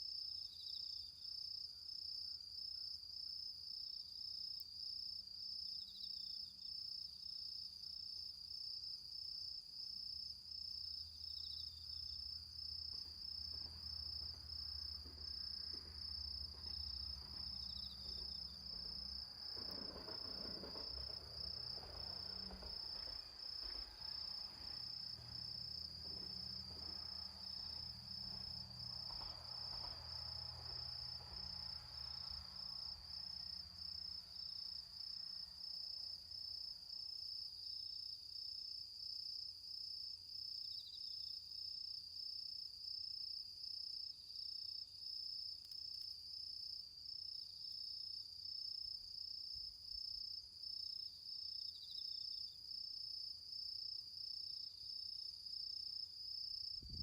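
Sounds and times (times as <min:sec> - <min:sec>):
crickets chirping: 0:00.0 - 0:57.0
embers crackling: 0:12.9 - 0:32.2.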